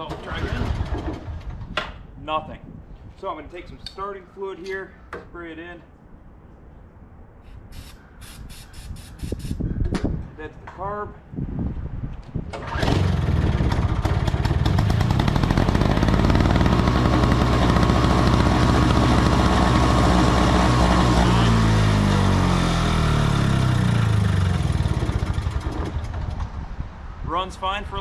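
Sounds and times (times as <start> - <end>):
small two-stroke engine running: 12.7 - 26.4.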